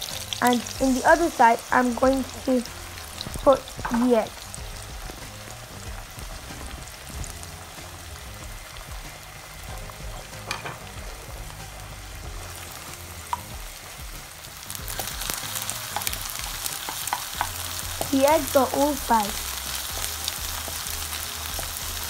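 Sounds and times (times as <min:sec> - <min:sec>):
eggs sizzling in a pan: 0:00.0 - 0:22.0
utensil clicking against pan: 0:15.0 - 0:18.1.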